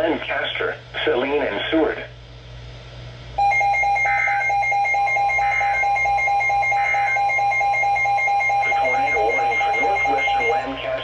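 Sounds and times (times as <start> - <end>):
rapidly pulsing alarm beep: 3.4 - 10.8
warbling digital code bursts: 3.4 - 10.8.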